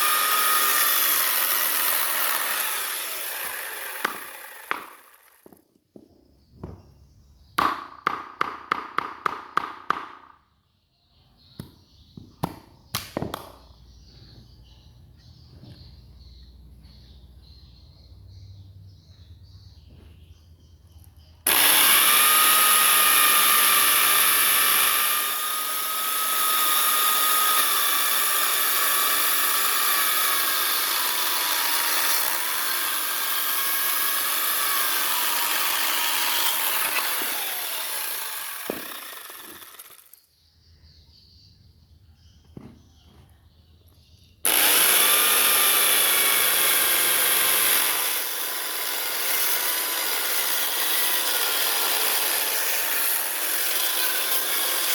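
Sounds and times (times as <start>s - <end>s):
power tool cutting wood: 0.0s - 5.6s, 21.4s - 40.2s, 44.4s - 54.9s.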